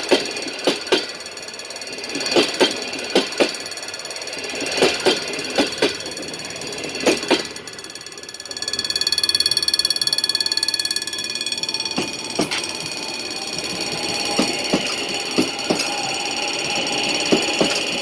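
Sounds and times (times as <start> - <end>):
train wheels knocking on rail joints: 0.0 - 18.0
high fluttering whine: 8.0 - 18.0.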